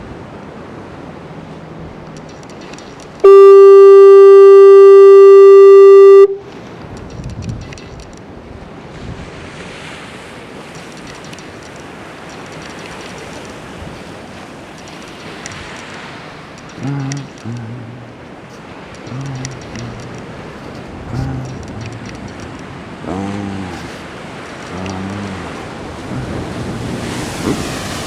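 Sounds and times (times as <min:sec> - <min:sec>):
surf washing: 0:00.0 - 0:28.0
fog horn honk: 0:03.2 - 0:06.4.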